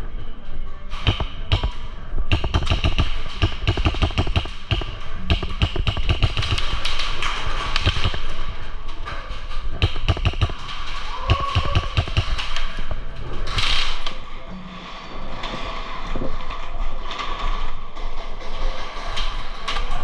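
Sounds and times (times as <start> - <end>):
airsoft gun shots: 1.0 - 6.8
rapid clicking gunfire: 1.0 - 8.4, 9.8 - 12.8.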